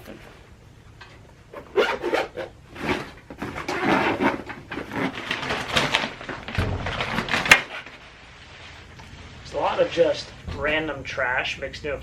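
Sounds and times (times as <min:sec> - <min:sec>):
items being rummaged by hand: 0:01.8 - 0:08.2.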